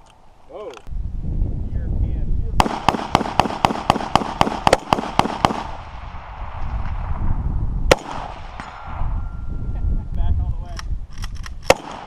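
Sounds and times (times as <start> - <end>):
gunshots: 2.6 - 7.1, 7.9 - 9.0, 11.6 - 12.0.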